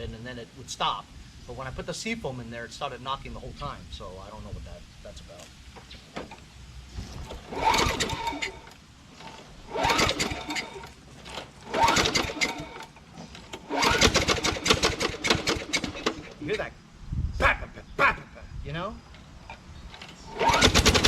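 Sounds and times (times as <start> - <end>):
lawn mower recoil starter cranking: 7.1 - 16.5, 19.1 - 21.0.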